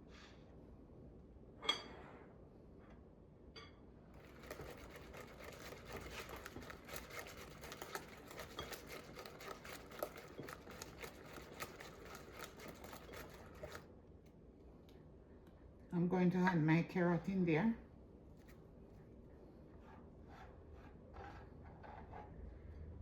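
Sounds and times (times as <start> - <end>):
scratchy scraping and clicking: 4.2 - 13.9.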